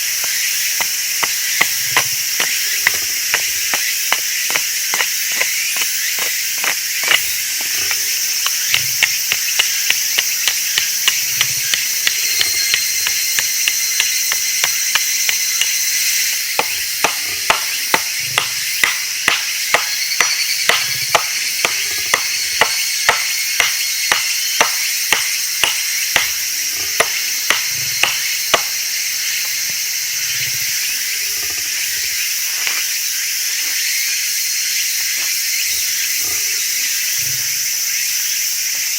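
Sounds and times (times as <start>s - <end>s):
insects chirring: 0.0s - 38.9s
sharp knocks: 0.2s - 15.8s, 16.6s - 28.8s.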